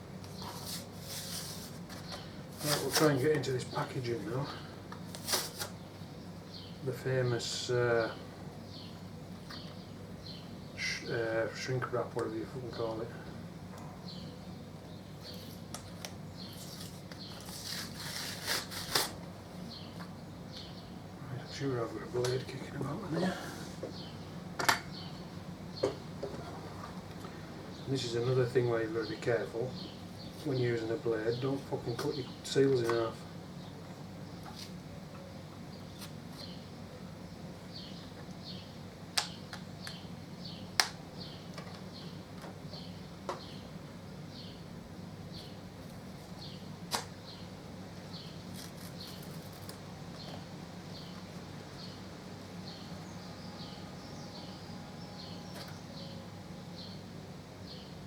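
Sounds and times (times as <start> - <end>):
steady low hum: 0.0 - 58.0
bird chirping: 5.8 - 10.9, 23.9 - 26.6, 37.3 - 44.7, 46.4 - 58.0.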